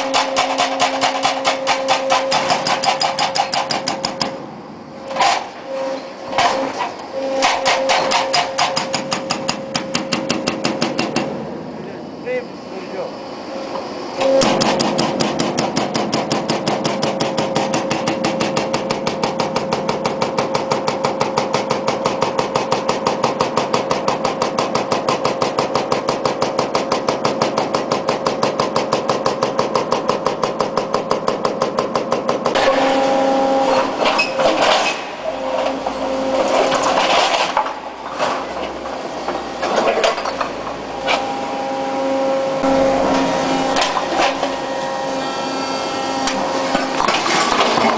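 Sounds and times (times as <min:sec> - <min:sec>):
hydraulic breaker hammering: 0:00.0 - 0:11.7, 0:14.2 - 0:47.9
machine humming: 0:03.8 - 0:47.9.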